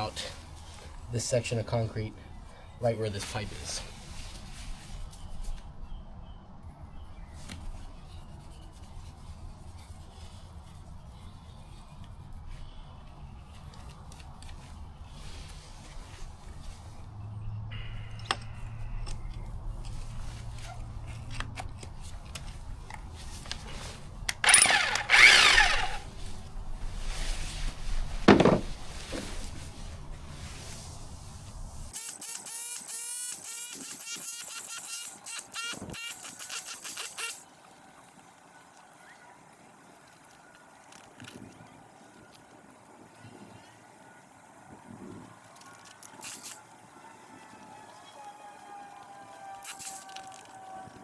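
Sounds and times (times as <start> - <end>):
rubbing and handling noises: 19.1 - 37.5, 45.4 - 46.6
rotary hammer chipping concrete: 24.4 - 26.0.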